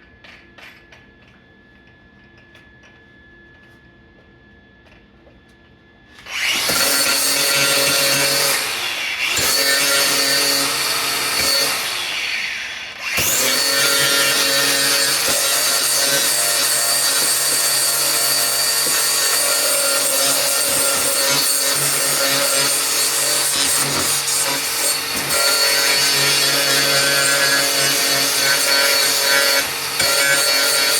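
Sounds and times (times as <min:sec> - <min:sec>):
angle grinder grinding steel: 0:06.2 - 0:30.9.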